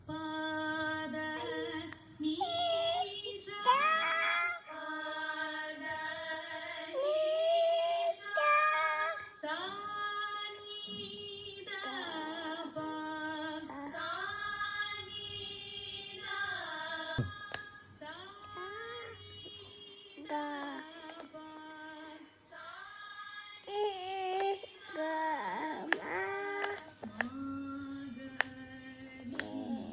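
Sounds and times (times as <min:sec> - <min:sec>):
child singing held notes: 0:01.3 - 0:04.8, 0:07.0 - 0:09.4, 0:18.5 - 0:21.6, 0:23.7 - 0:27.5, 0:29.2 - 0:29.9.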